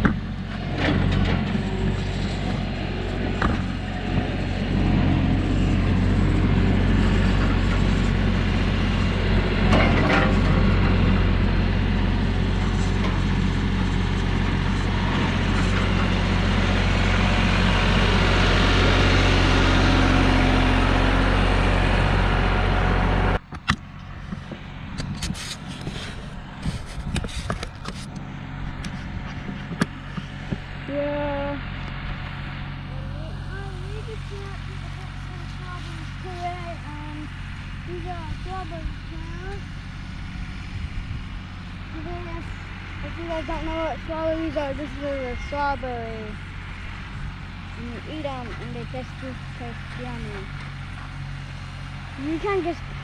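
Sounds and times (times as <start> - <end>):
vehicle engine running: 0.0 - 53.0
scattered clicks and knocks: 26.7 - 30.7.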